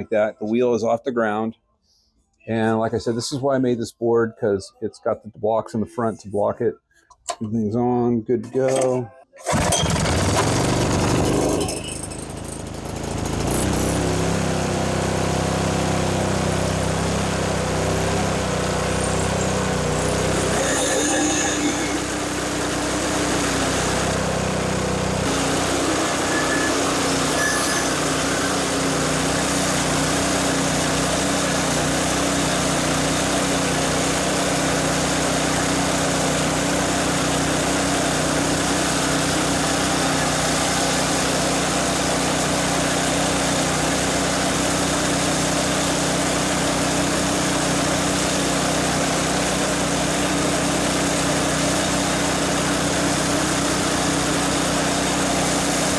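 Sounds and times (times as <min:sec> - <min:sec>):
small gasoline engine running: 0:09.4 - 0:55.9
reel grinding against bed knife: 0:20.1 - 0:22.5, 0:25.4 - 0:28.9.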